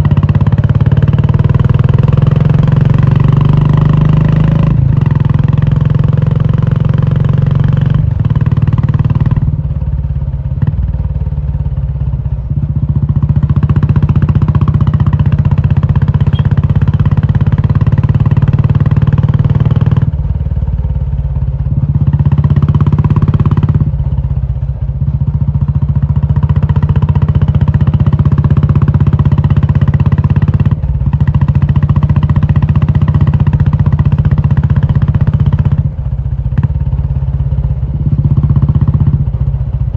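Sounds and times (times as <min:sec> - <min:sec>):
loud motorcycle engine revving: 0:00.0 - 0:09.6, 0:12.9 - 0:20.2, 0:21.8 - 0:24.1.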